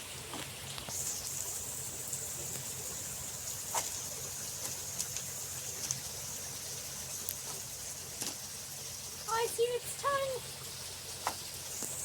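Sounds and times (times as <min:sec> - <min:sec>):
steady high-pitched hiss: 0:00.0 - 0:12.0.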